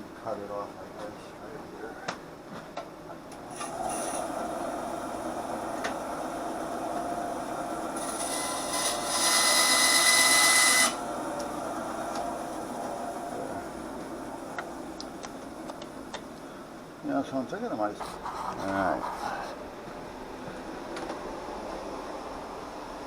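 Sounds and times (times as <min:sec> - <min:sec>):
small power tool cutting: 0:03.5 - 0:13.5.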